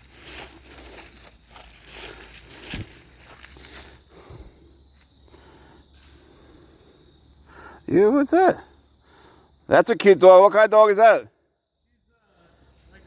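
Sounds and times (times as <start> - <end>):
rustling: 0.0 - 4.1
footsteps: 0.0 - 5.1.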